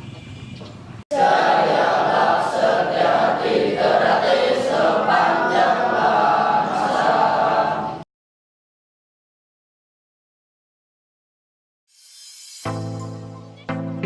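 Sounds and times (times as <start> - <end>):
voices chanting in unison: 1.1 - 8.0.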